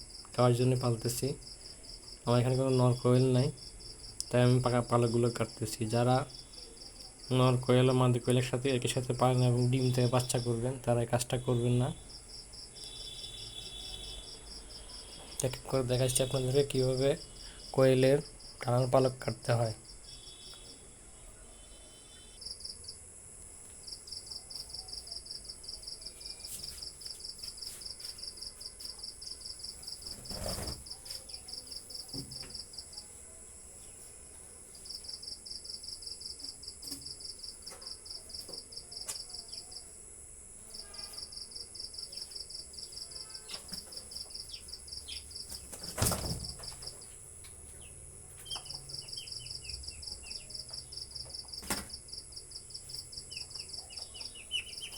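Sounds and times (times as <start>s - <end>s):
crickets trilling: 0.0s - 54.9s
faint high whine: 2.2s - 51.7s
falling chirp: 43.1s - 51.1s, 52.8s - 54.9s.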